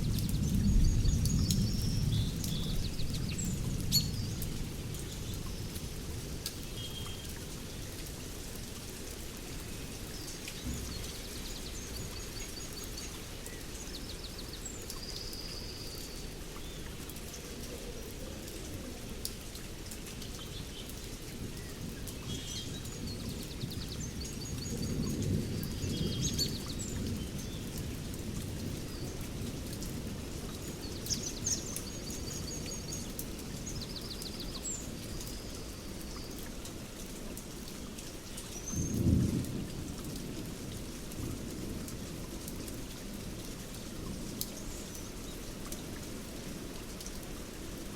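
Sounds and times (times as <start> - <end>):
songbirds chirping: 0.0 - 8.2, 8.8 - 27.9, 28.7 - 39.4
steady rain falling: 0.0 - 47.9
distant thunder rumble: 10.6 - 13.2.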